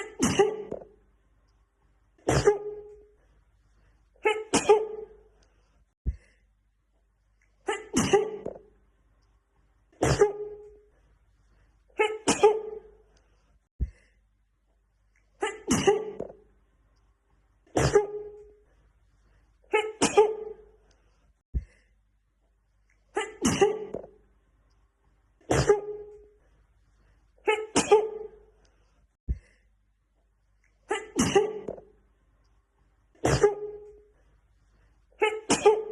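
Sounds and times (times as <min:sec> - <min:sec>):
woman sneezing: 0:00.0 - 0:00.8, 0:02.2 - 0:03.0, 0:04.2 - 0:05.2, 0:07.6 - 0:08.6, 0:10.0 - 0:10.6, 0:12.0 - 0:12.9, 0:15.4 - 0:16.3, 0:17.7 - 0:18.4, 0:19.7 - 0:20.6, 0:23.1 - 0:24.0, 0:25.4 - 0:26.1, 0:27.4 - 0:28.4, 0:30.9 - 0:31.8, 0:33.2 - 0:33.8, 0:35.2 - 0:35.9.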